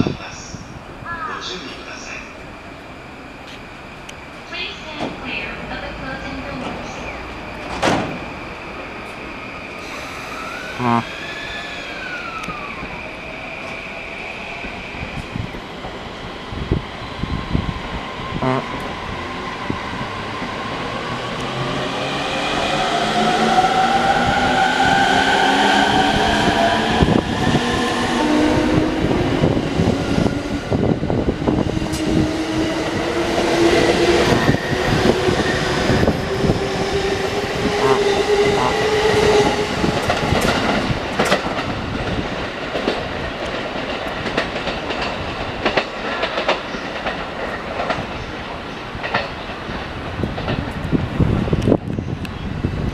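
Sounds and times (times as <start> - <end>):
electric train motors whining: 9.0 - 15.2.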